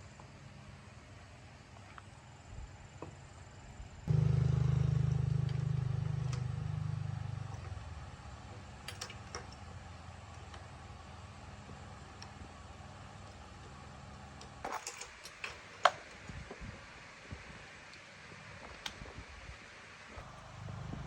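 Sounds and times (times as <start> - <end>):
motor humming: 4.1 - 8.6.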